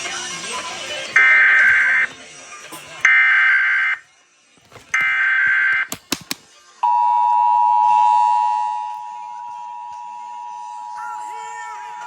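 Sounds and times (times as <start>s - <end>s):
sharp clicks: 5.7s - 6.4s
two-tone attention signal: 6.8s - 12.0s.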